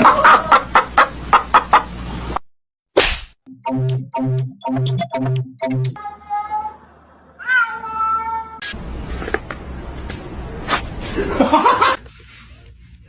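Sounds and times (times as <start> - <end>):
cat meowing: 6.0 - 6.8, 7.4 - 8.6.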